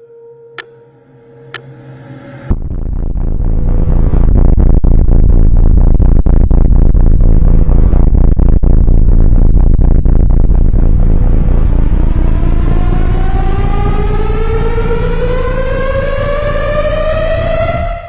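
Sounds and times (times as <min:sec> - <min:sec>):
low rumble: 0:01.3 - 0:18.0
rising siren-like whine: 0:10.7 - 0:18.0.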